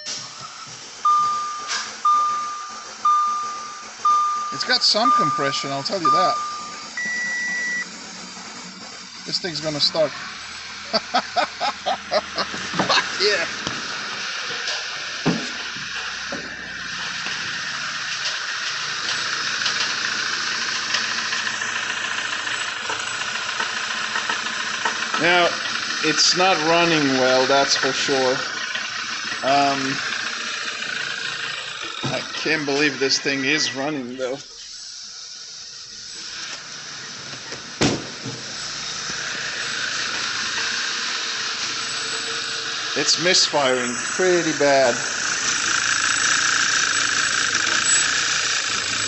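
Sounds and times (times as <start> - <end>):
car engine misfiring: 0.0 - 49.0
steady hissing: 8.0 - 49.0
sharp thump: 37.8 - 38.4
sharp engine knock: 37.8 - 38.5.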